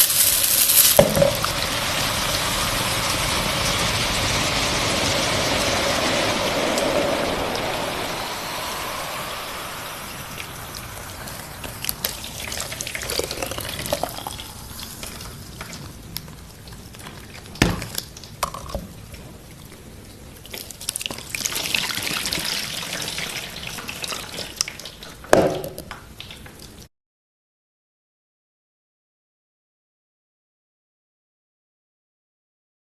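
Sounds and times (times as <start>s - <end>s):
water rushing and pouring: 0.0s - 17.6s, 20.5s - 25.0s
water dripping and splashing: 0.0s - 19.3s, 20.3s - 26.9s.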